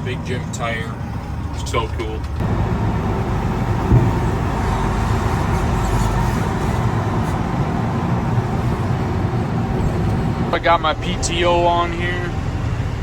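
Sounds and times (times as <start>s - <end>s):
truck engine low rumble: 0.0s - 13.0s
single knock: 3.9s - 4.2s.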